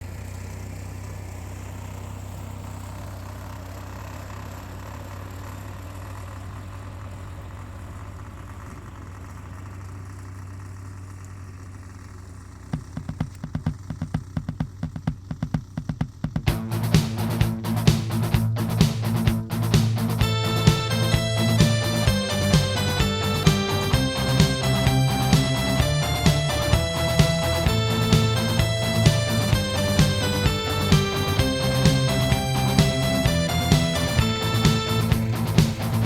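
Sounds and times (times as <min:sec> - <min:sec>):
engine idling: 0:00.0 - 0:36.0
rapid uneven sharp knocks: 0:12.7 - 0:36.0.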